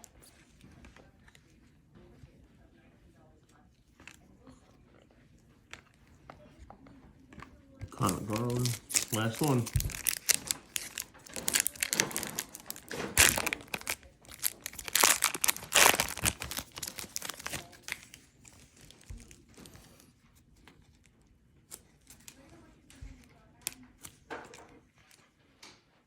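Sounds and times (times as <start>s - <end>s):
cards being handled: 5.6s - 25.3s
foil wrapper crinkling: 7.9s - 19.8s.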